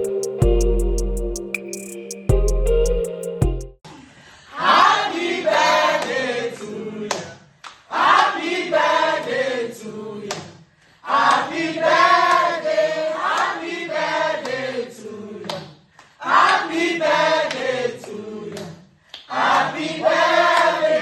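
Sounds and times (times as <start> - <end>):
group of voices singing: 4.5 - 21.0.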